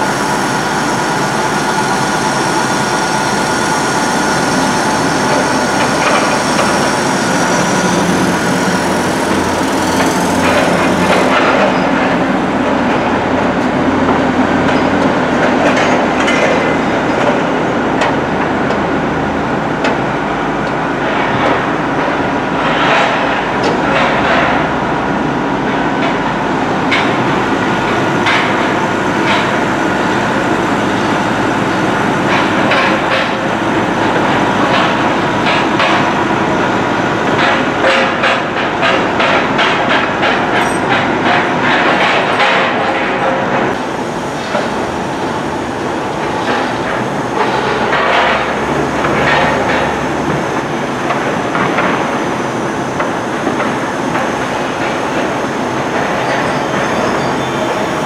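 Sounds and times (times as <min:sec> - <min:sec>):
train rumbling on track: 0:00.0 - 0:58.0.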